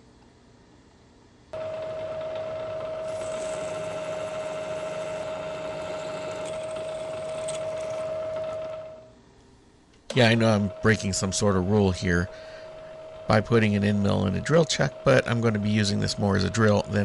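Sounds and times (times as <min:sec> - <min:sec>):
milling machine whine: 0:01.6 - 0:09.1.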